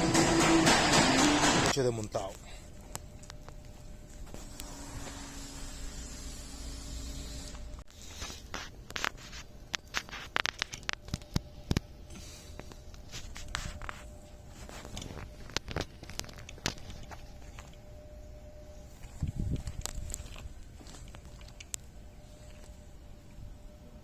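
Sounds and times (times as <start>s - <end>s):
hand tools clicking and tapping: 0.0s - 1.7s.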